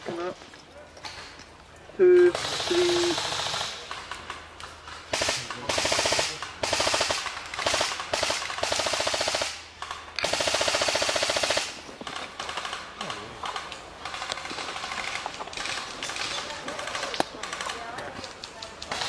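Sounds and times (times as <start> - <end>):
airsoft gun automatic fire: 2.4 - 4.1, 5.1 - 9.6, 10.2 - 11.8.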